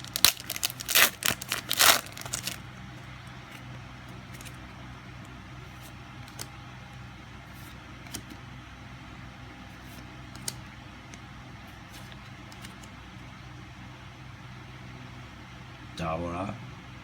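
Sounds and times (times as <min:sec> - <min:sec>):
trading cards being handled: 0:00.0 - 0:02.6
steady low hum: 0:00.0 - 0:17.0.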